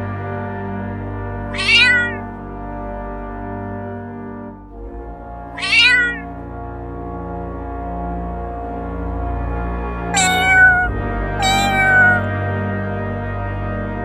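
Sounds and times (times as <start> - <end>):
background music with held chords: 0.0 - 11.4, 12.2 - 14.0
cat meowing: 1.6 - 2.3, 5.6 - 6.3, 10.2 - 12.3.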